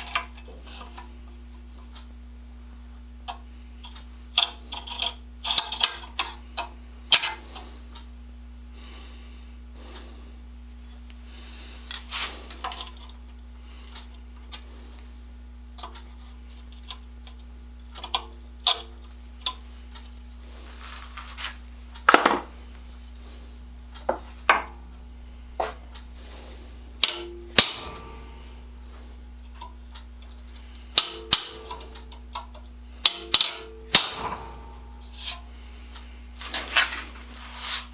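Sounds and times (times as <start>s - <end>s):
steady low hum: 0.0s - 37.9s.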